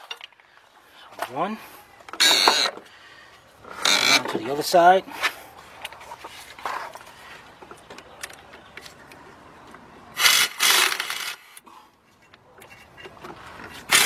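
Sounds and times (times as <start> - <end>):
pneumatic impact wrench bursts: 2.2 - 2.8, 10.2 - 11.6.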